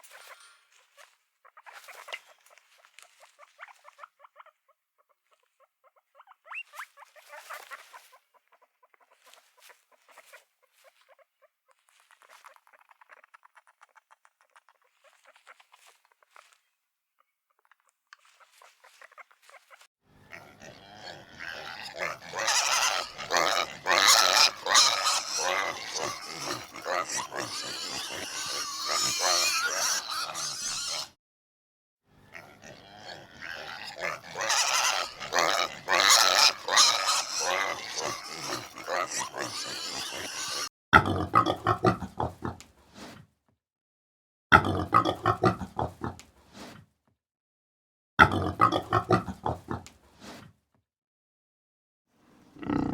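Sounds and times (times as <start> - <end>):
pigs grunting and oinking: 20.2 - 31.2, 32.2 - 42.7, 44.5 - 46.2, 48.2 - 49.9, 52.6 - 52.9.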